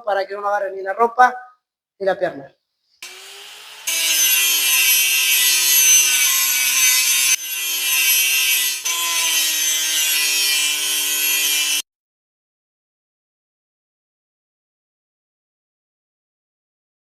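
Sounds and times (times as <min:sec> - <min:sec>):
angle grinder cutting: 0:03.0 - 0:11.8.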